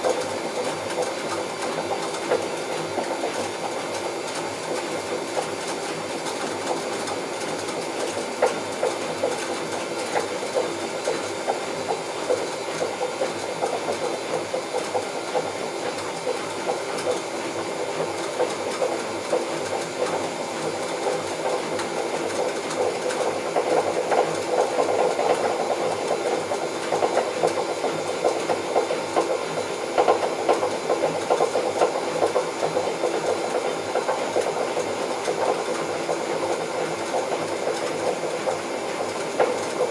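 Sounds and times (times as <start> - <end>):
washing machine drum rattling grind: 16.2 - 39.9.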